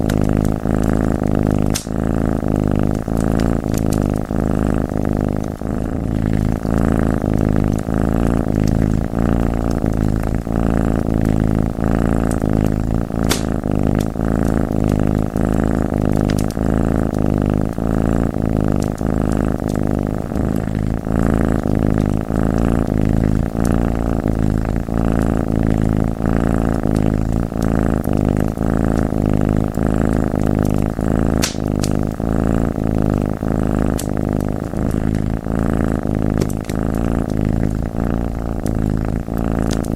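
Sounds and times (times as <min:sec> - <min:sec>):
wood fire pops and crackles: 0:00.0 - 0:01.9, 0:12.2 - 0:14.1, 0:16.0 - 0:19.0, 0:30.4 - 0:32.2
cat purring: 0:00.0 - 0:39.9.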